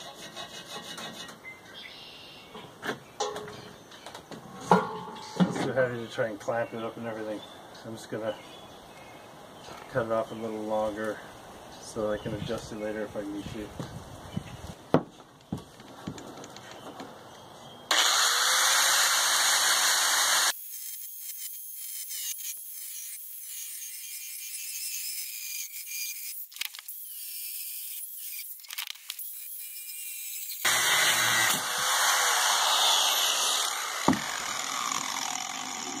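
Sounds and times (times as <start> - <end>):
power tool cutting metal: 17.9 - 36.0.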